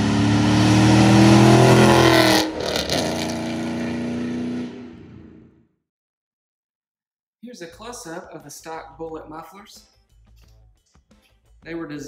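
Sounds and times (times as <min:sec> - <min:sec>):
loud car exhaust revving: 0:00.0 - 0:05.5.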